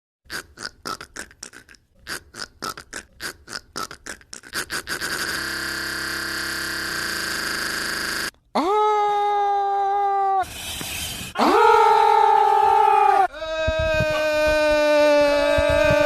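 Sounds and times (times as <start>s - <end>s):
man making mouth noises: 0.3s - 5.9s.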